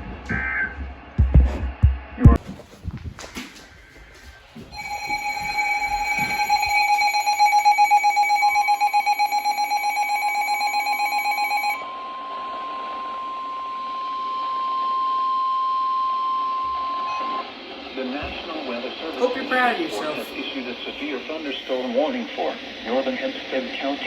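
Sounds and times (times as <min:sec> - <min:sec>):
steady single-pitch alarm tone: 0:04.7 - 0:17.5
fluttering two-tone alert tone: 0:04.8 - 0:11.8.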